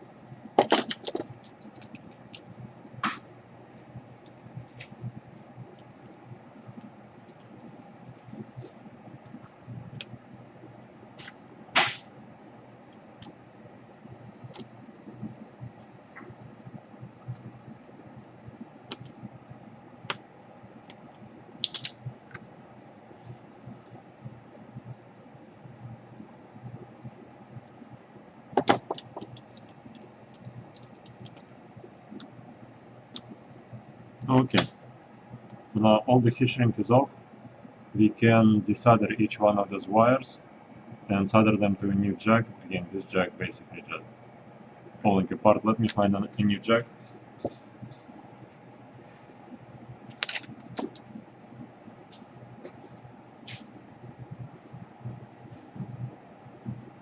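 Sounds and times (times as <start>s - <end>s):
faint steady hum: 0.0s - 57.0s
sharp clicks and small scrapes: 0.6s - 3.3s, 11.2s - 12.0s, 20.9s - 22.1s, 28.6s - 31.5s, 50.1s - 51.1s.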